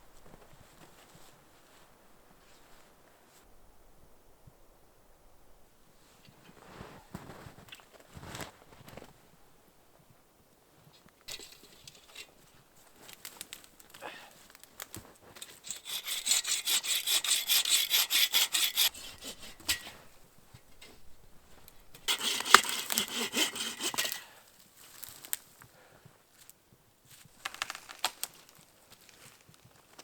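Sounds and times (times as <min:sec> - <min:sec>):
faint scuffing: 0:00.1 - 0:03.5
hand saw cutting wood: 0:15.4 - 0:20.1, 0:22.0 - 0:24.4.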